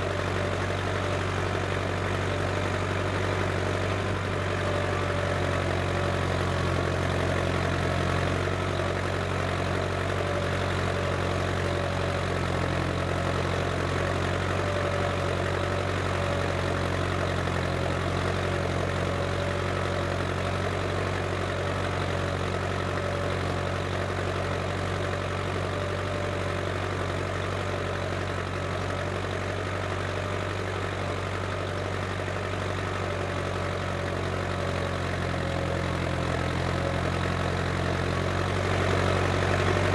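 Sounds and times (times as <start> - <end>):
tractor diesel engine drone: 22.8 - 39.9.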